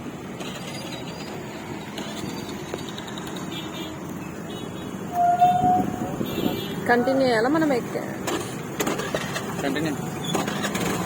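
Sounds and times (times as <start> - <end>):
ferry engine rumble: 0.0 - 11.0
ship horn: 5.1 - 7.1.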